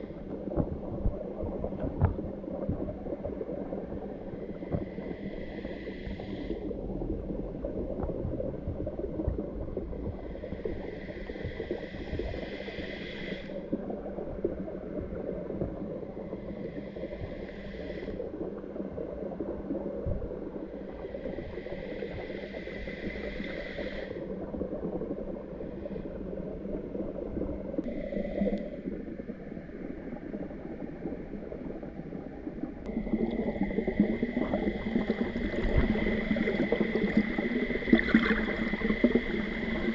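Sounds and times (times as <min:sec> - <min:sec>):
water gurgling and bubbling: 0:00.0 - 0:12.6, 0:24.2 - 0:39.9
low hum: 0:26.7 - 0:39.9.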